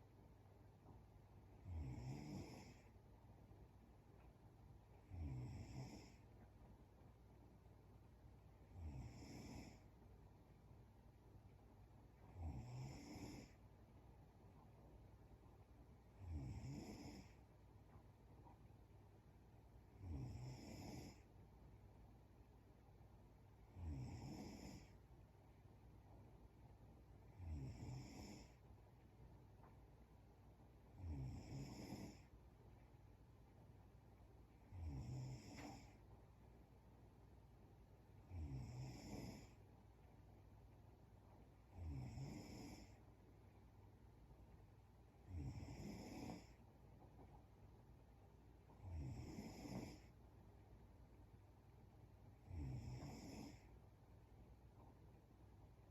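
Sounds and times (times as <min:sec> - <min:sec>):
woman snoring faintly: 0:01.6 - 0:02.9, 0:05.0 - 0:06.3, 0:12.3 - 0:13.6, 0:16.2 - 0:17.4, 0:20.0 - 0:21.3, 0:23.7 - 0:25.0, 0:27.4 - 0:28.6, 0:31.0 - 0:32.3, 0:34.7 - 0:36.0, 0:38.3 - 0:39.6, 0:41.7 - 0:43.0, 0:45.3 - 0:46.6, 0:48.8 - 0:50.1, 0:52.4 - 0:53.7.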